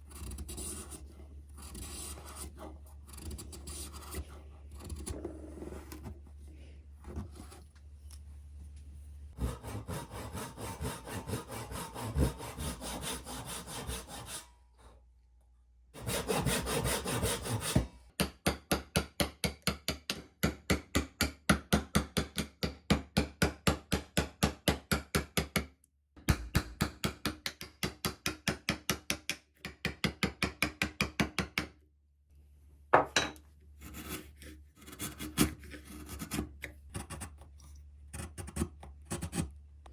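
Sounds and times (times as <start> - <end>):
hand saw cutting wood: 9.4 - 14.5, 16.0 - 17.9
tool rasping on wood: 9.4 - 14.5, 16.0 - 17.9.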